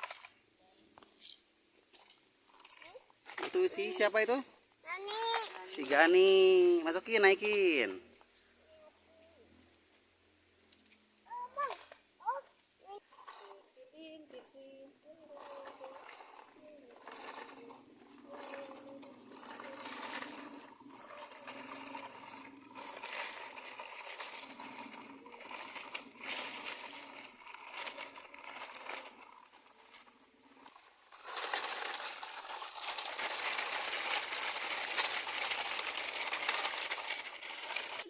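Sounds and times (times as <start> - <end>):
small stones clattering: 15.4 - 38.0.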